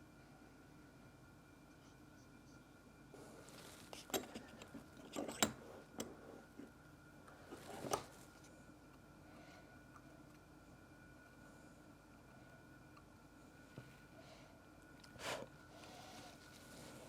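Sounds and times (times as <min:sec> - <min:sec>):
faint steady hum: 0:00.0 - 0:17.0
small parts clicking and knocking: 0:04.0 - 0:06.7.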